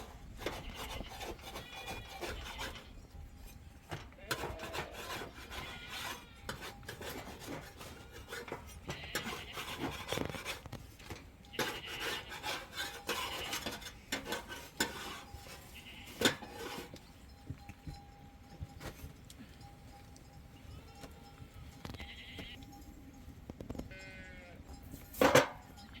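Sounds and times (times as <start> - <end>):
utensils scraping: 0.0 - 17.2
metal dishes clinking: 11.1 - 17.1, 25.0 - 26.0.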